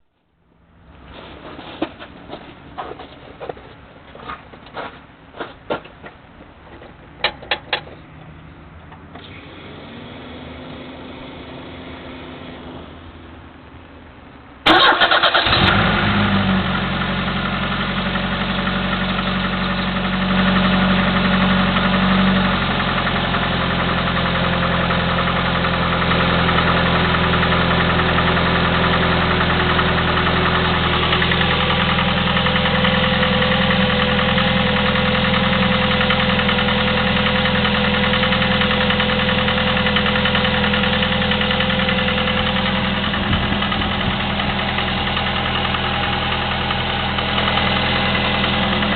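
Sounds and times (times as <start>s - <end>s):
car engine idling: 6.6s - 48.9s.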